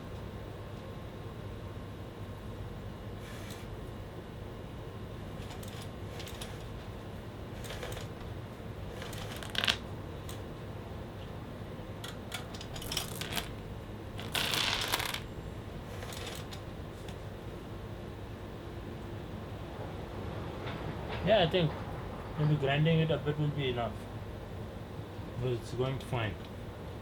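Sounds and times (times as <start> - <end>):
bicycle chain scraping brake caliper: 3.2 - 3.7, 5.4 - 6.8, 7.6 - 8.2, 8.9 - 9.8, 12.4 - 13.6, 14.2 - 15.2, 15.8 - 16.6.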